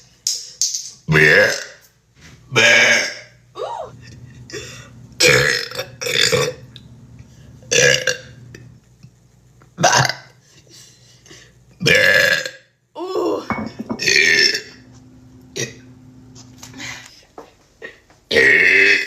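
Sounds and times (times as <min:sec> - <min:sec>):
woman burping loudly: 0:02.6 - 0:06.6, 0:07.7 - 0:08.4, 0:11.8 - 0:14.8, 0:18.3 - 0:19.0.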